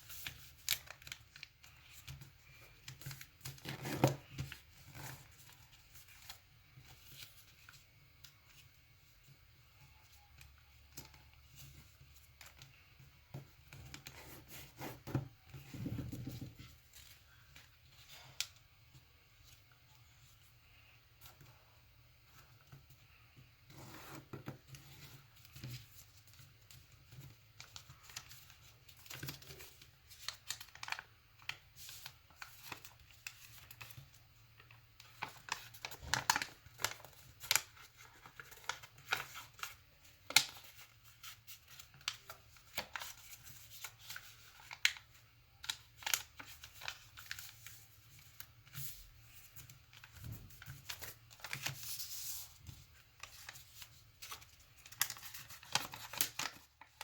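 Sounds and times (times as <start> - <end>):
paper being folded and creased: 0.0 - 9.1, 22.3 - 57.0.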